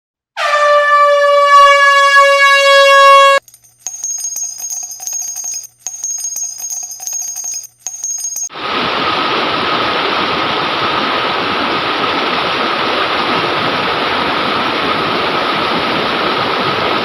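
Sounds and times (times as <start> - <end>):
bell-like electronic tone: 3.9 - 8.6
river water rushing: 8.6 - 17.0.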